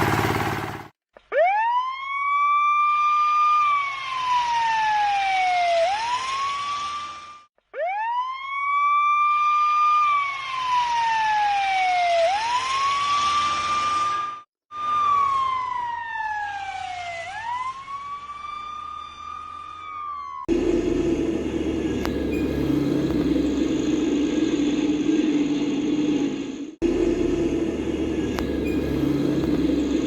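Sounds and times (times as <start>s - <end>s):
police siren wailing: 1.3s - 30.0s
low hum with rumble: 20.5s - 30.0s.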